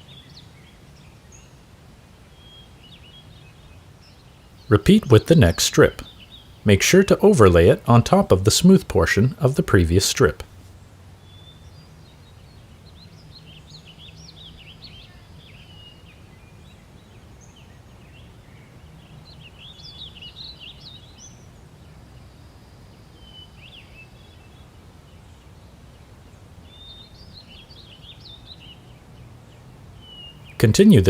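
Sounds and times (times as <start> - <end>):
small birds chirping: 2.4 - 21.6, 26.6 - 31.0.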